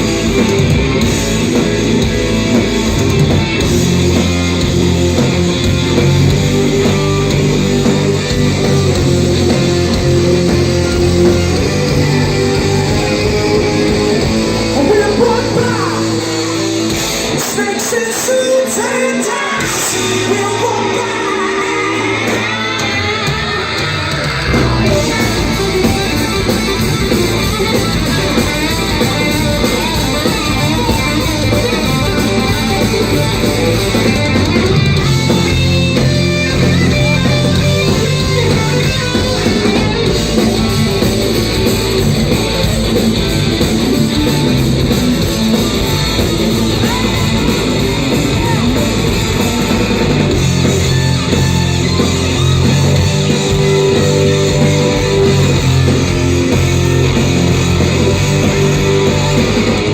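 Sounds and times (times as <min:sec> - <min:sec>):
live rock band playing: 0:00.0 - 0:59.9.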